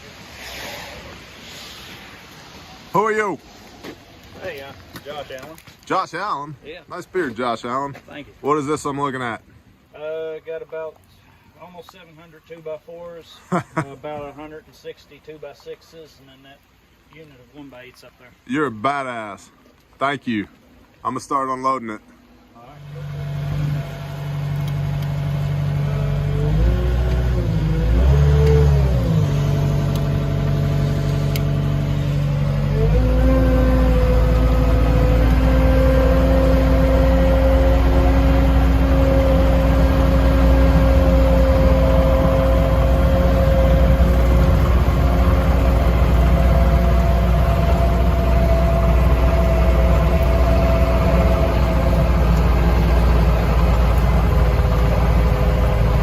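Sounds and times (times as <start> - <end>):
vehicle engine revving: 22.7 - 56.0.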